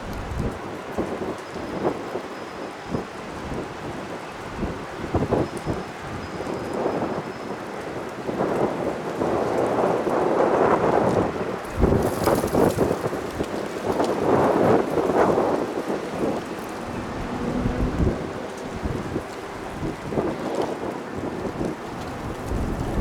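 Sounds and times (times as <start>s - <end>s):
wind buffeting microphone: 0.0s - 23.0s
jet engines rushing: 14.8s - 23.0s.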